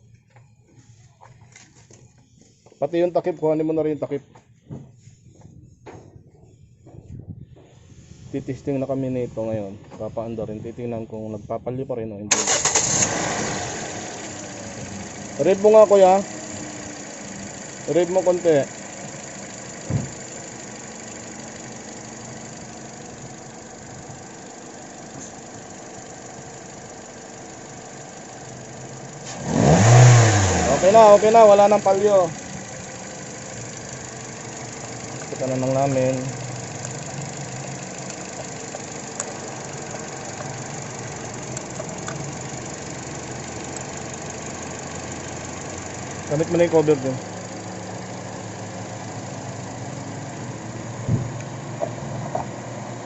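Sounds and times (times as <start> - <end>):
car engine idling: 12.3 - 53.0
brief thump: 19.8 - 20.2, 51.0 - 51.4.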